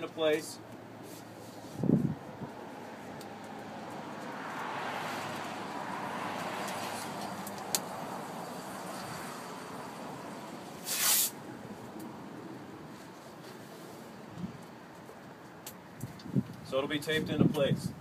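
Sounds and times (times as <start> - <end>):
passing road traffic: 0.0 - 18.0
tape ripping off roll: 10.8 - 11.4.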